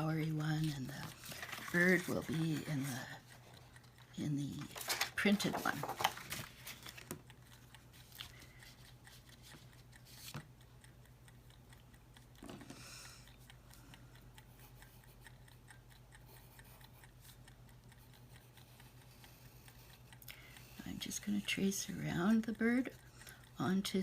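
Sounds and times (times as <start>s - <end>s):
low steady hum: 0.0s - 24.0s
faint clicks of paper handling: 0.6s - 3.2s, 4.6s - 10.5s
paper rustling: 1.0s - 2.4s, 4.7s - 7.2s.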